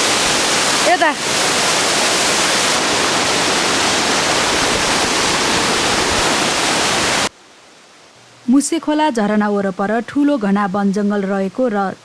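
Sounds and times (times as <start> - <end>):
waterfall rushing: 0.0 - 7.3.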